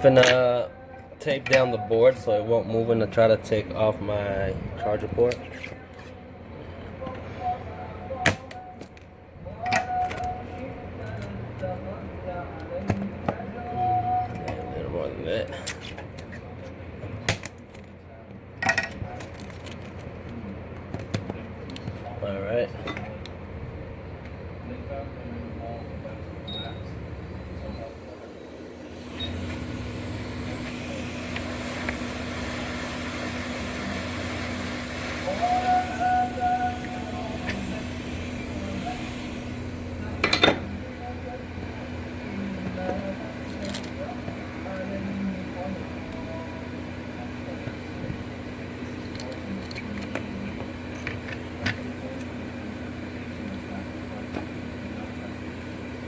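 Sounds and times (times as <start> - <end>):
steady high tone: 23.8 - 47.5
hot air gun hissing: 28.5 - 40.9.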